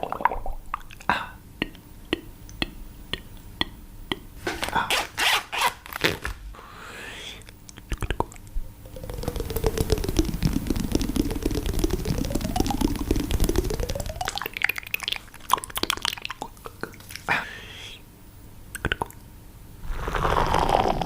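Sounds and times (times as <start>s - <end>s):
crackling pour of liquid: 8.2s - 17.2s.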